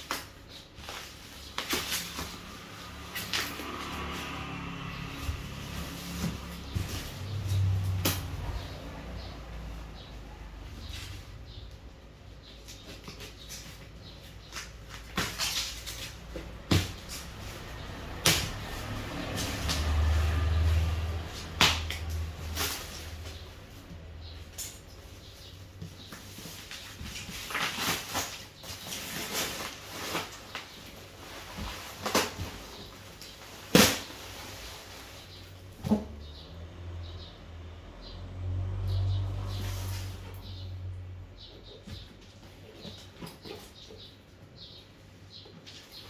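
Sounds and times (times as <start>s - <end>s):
objects rustling and knocking: 0.0s - 36.4s.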